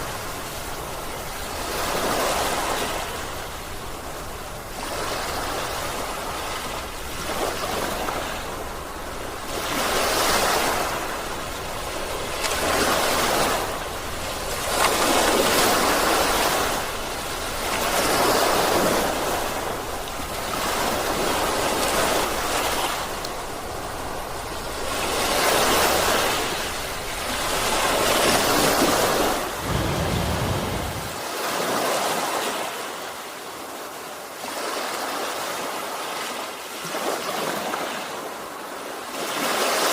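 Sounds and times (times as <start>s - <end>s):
sea waves washing in: 0.0s - 39.9s
low rumble: 29.6s - 31.1s.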